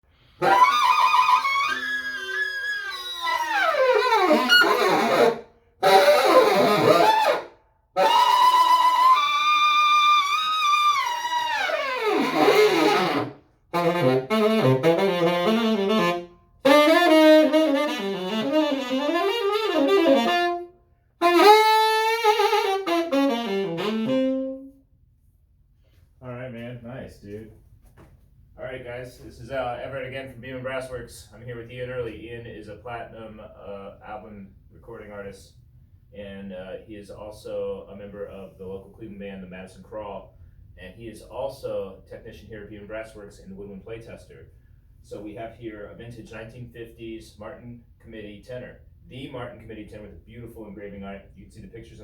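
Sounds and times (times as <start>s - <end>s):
tenor saxophone playing solo: 0.4s - 24.8s.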